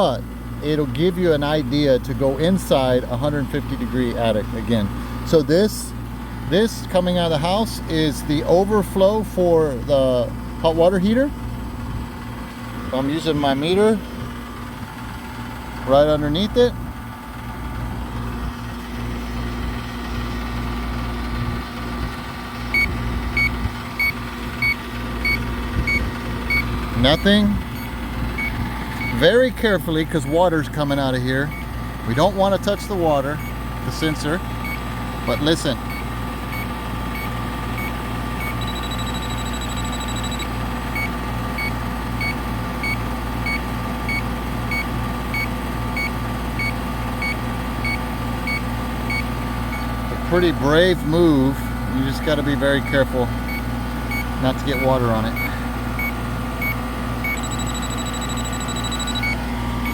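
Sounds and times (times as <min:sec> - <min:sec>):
low machine hum: 0:00.0 - 0:59.9
leak detector beeping: 0:12.9 - 0:14.0, 0:22.7 - 0:51.0, 0:52.0 - 0:59.9
short high beeps: 0:37.2 - 0:41.7, 0:52.8 - 0:59.9.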